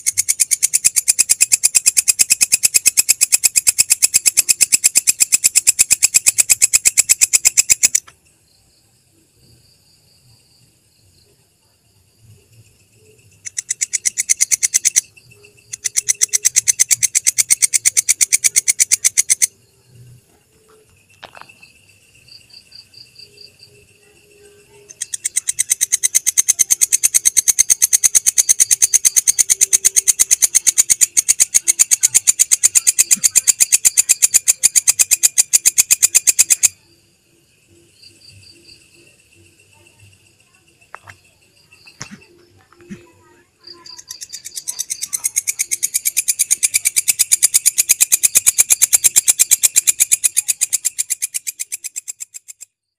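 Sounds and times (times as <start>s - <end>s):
insect clicking song: 0.0s - 52.9s
faint steady high tone: 19.4s - 25.6s.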